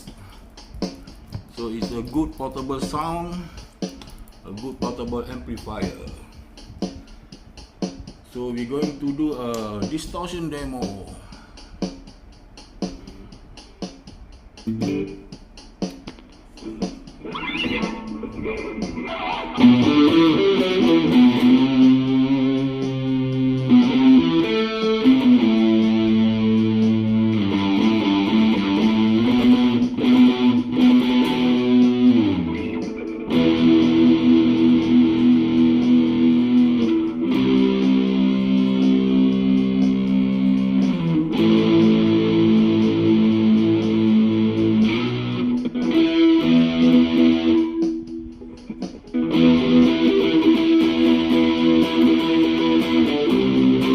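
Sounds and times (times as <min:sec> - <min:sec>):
distorted electric guitar: 0:14.6 - 0:15.3, 0:16.6 - 0:53.9.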